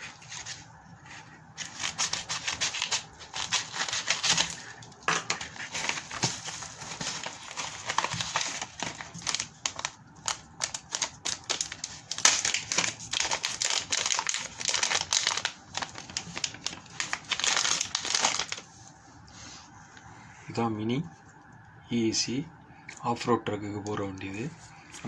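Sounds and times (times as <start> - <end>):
plastic packaging crinkling: 0.0 - 18.7.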